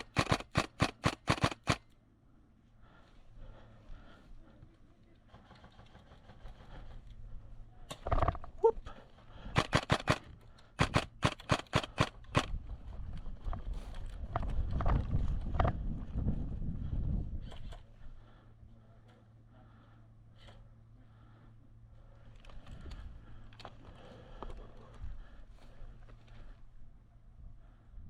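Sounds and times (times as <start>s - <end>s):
airsoft gun shots: 0.0s - 1.8s, 9.6s - 10.2s, 10.8s - 12.5s.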